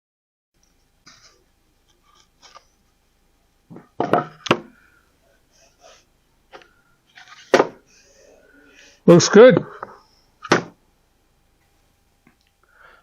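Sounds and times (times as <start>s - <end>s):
loud wooden knocks: 3.7s - 4.8s, 7.5s - 7.8s, 10.5s - 10.8s.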